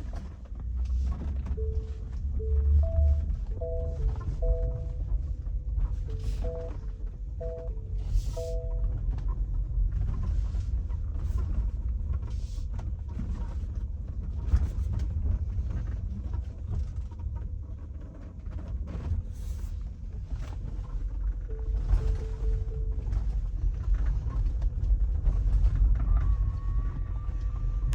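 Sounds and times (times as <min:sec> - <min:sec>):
car road rumble: 0:00.0 - 0:17.8.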